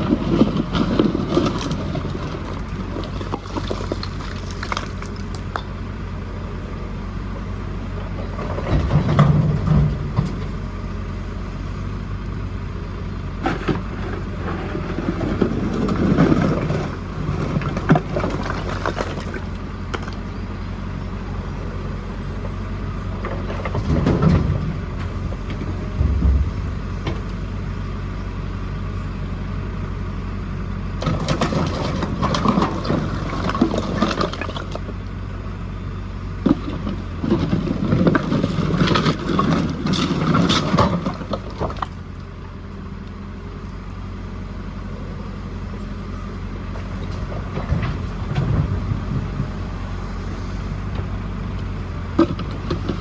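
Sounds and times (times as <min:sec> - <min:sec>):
bucket clattering and scraping rubble: 0:00.0 - 0:05.7, 0:08.2 - 0:10.6, 0:13.5 - 0:20.2, 0:23.2 - 0:27.5, 0:31.0 - 0:34.9, 0:36.4 - 0:42.0, 0:46.8 - 0:49.6, 0:52.1 - 0:53.0
diesel engine running: 0:00.0 - 0:53.0.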